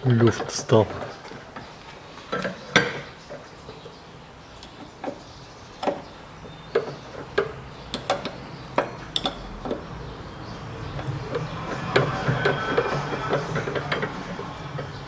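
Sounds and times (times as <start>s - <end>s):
metallic knocks and clicks: 4.6s - 10.0s, 10.9s - 15.0s.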